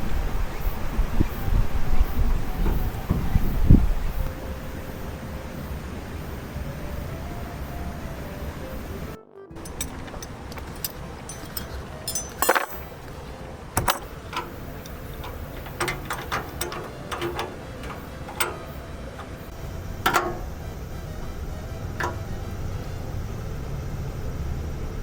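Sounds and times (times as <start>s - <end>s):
ringing metal clinks: 9.6s - 20.6s
tools clicking and knocking: 9.6s - 20.6s.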